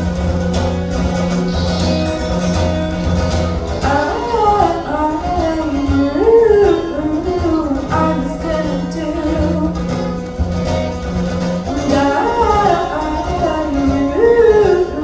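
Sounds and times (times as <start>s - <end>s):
guitar melody: 0.0s - 15.0s
steady bass: 0.0s - 15.0s
held low note: 0.5s - 7.8s.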